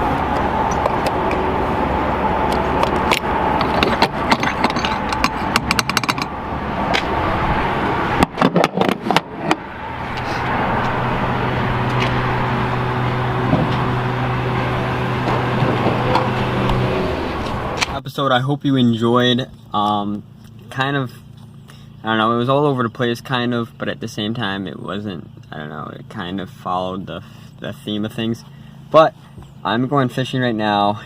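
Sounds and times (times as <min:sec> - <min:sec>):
car running hum: 0:00.0 - 0:31.0
sharp clicks and knocks: 0:02.5 - 0:07.1, 0:08.2 - 0:09.6.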